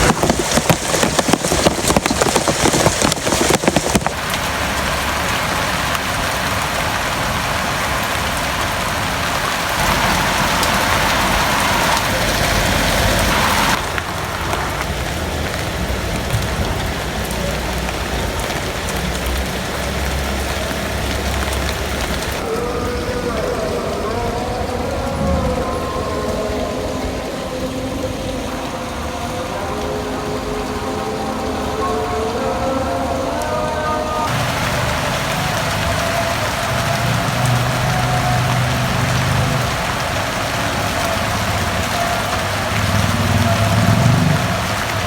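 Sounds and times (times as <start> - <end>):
close raindrop impacts: 0.0 - 24.0, 34.3 - 45.0
heavy rain falling: 0.0 - 45.0.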